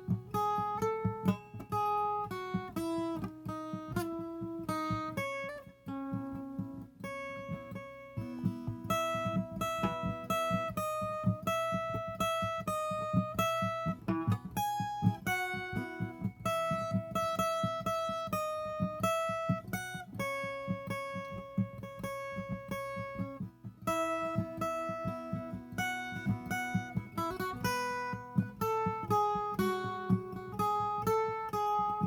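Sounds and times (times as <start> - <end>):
ten-string guitar melody: 0.0 - 32.0
plucked bass pattern: 6.0 - 19.6.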